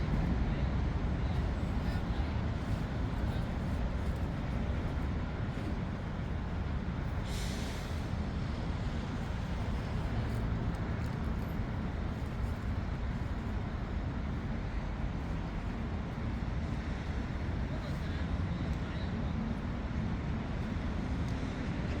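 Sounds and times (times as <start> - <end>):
low outdoor rumble: 0.0 - 22.0
brief hiss: 7.2 - 8.1.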